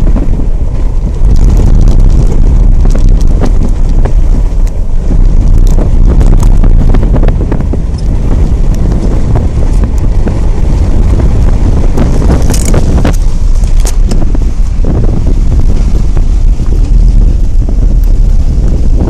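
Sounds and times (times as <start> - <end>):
wind buffeting microphone: 0.0 - 19.0.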